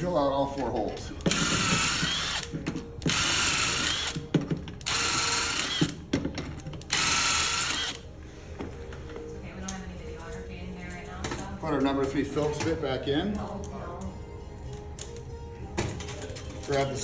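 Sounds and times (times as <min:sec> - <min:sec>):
power drill whining: 0:01.3 - 0:02.5, 0:03.1 - 0:04.2, 0:04.8 - 0:06.0, 0:06.9 - 0:08.0.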